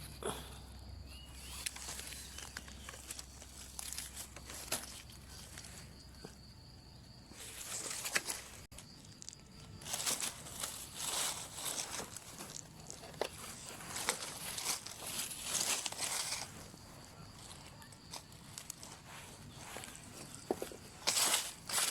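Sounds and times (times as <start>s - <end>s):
footsteps rustling through leaves: 1.4s - 5.8s, 9.8s - 21.9s.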